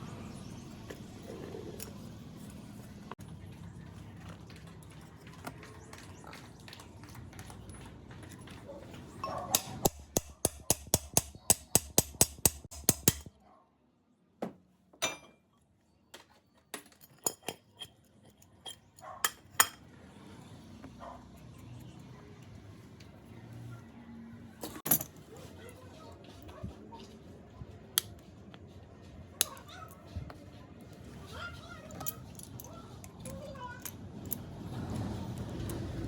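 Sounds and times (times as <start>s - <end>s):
metal tools tapping and clinking: 9.2s - 13.3s, 15.0s - 15.4s, 16.7s - 19.8s, 24.6s - 25.2s, 31.9s - 34.5s.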